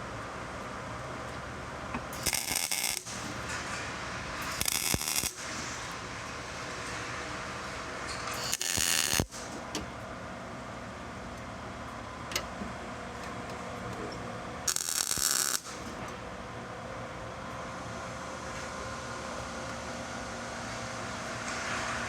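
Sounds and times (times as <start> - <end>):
steady background hum: 0.0 - 22.0
welding arc crackling: 2.1 - 7.3, 8.3 - 9.6, 14.7 - 16.0.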